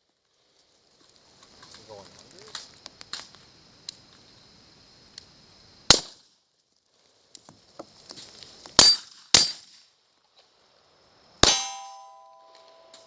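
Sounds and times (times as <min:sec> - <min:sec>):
pistol shots: 0:05.9 - 0:06.2, 0:08.8 - 0:09.7, 0:11.4 - 0:12.7.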